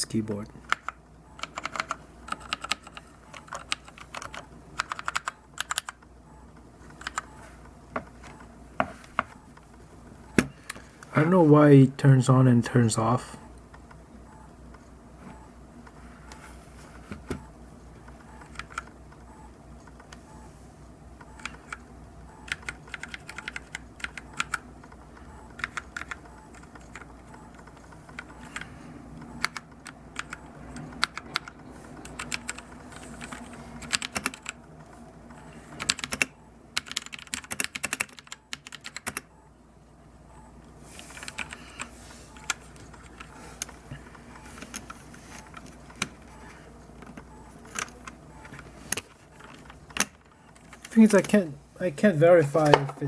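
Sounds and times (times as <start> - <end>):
mechanical keyboard typing clicks: 0.7 - 6.1, 6.9 - 7.3, 22.4 - 28.7, 29.3 - 34.6, 35.8 - 39.3.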